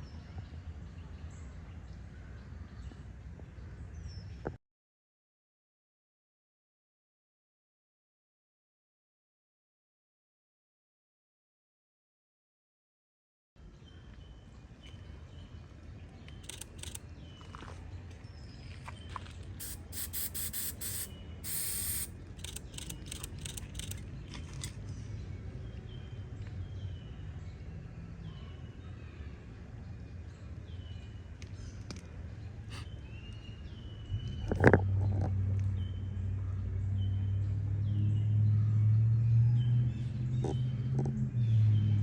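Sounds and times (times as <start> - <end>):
birds chirping: 14.2 - 26.0
sharp clicks: 16.3 - 17.0, 19.6 - 24.8
brief hiss: 19.6 - 22.1.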